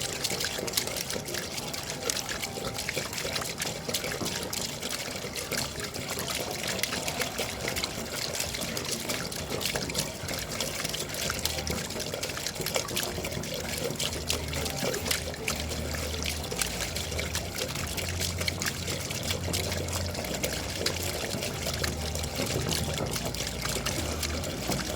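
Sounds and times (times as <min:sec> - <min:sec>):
running water trickling: 0:00.0 - 0:24.9
water dripping: 0:00.0 - 0:24.9.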